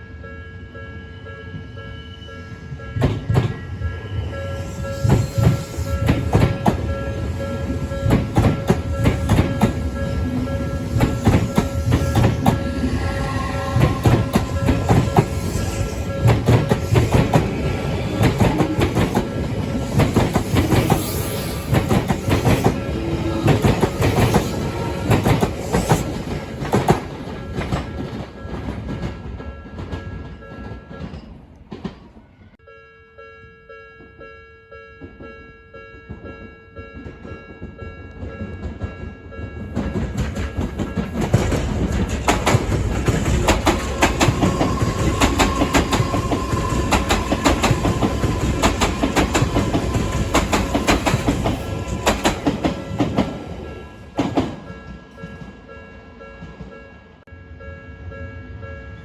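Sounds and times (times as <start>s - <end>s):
steady high tone: 0.0s - 26.2s
train wheels clattering over rail joints: 5.0s - 32.2s, 37.0s - 55.5s.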